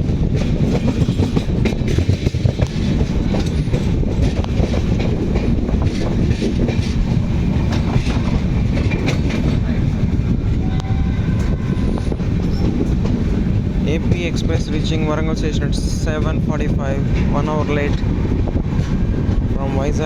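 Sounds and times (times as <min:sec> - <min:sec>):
wheels clicking over rail joints: 0:00.0 - 0:10.2
train rumbling on rails: 0:00.0 - 0:20.0.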